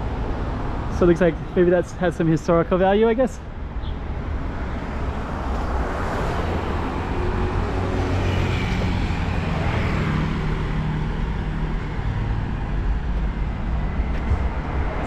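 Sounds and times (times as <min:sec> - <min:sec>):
vehicle passing: 0:04.8 - 0:15.0.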